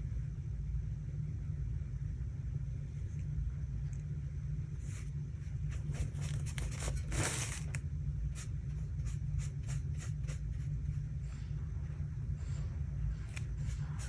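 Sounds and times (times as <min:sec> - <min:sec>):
paintbrush strokes on paper: 0:04.8 - 0:11.6, 0:12.4 - 0:14.0.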